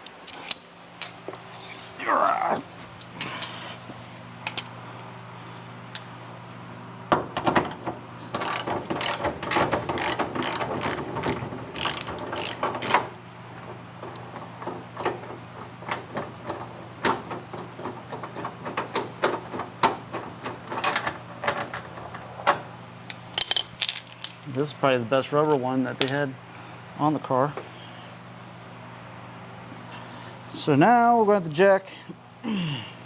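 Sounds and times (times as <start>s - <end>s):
ratchet wrench clicking: 8.4s - 13.0s.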